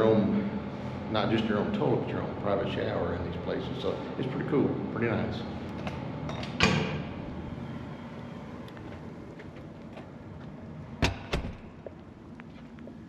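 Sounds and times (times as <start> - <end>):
low background noise: 0.0 - 13.0
door banging shut: 11.0 - 11.7.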